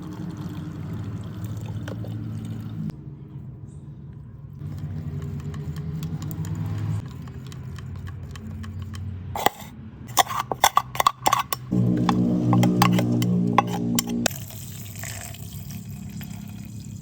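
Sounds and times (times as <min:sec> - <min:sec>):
sharp clinks and knocks: 0:08.5 - 0:14.3
steady low hum: 0:09.4 - 0:14.3.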